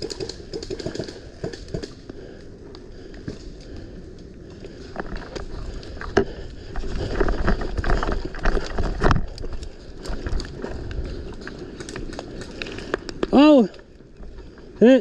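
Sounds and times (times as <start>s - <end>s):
wind buffeting microphone: 4.8s - 14.8s.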